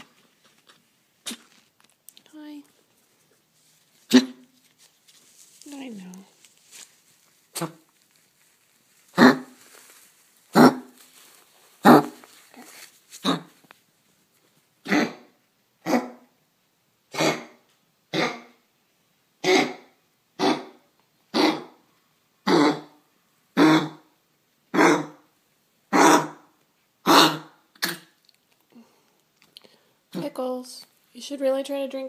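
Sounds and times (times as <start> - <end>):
pet coughing: 4.1 - 4.4, 9.2 - 9.5, 10.6 - 10.9, 14.8 - 16.2, 17.1 - 18.6, 19.4 - 21.7, 22.5 - 23.0, 23.6 - 24.0, 25.9 - 26.4, 27.0 - 28.1.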